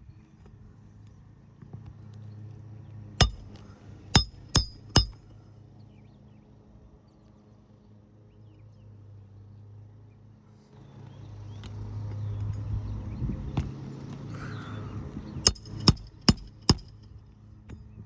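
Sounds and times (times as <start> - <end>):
hammer striking nail: 3.2 - 3.6, 4.2 - 5.2, 15.5 - 17.0.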